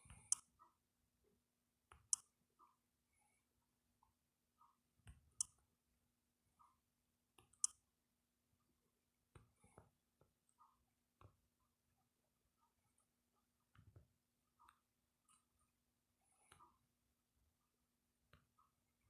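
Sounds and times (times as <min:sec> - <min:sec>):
faint small ticks: 0:07.6 - 0:07.8.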